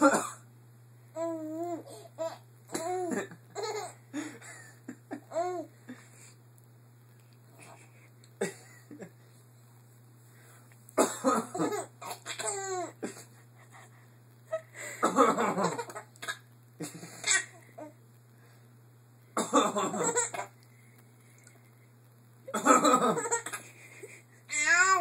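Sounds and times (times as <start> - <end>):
baby laughing: 1.7 - 4.0, 11.5 - 13.0, 19.9 - 20.5
man coughing: 11.0 - 11.7, 15.0 - 15.6.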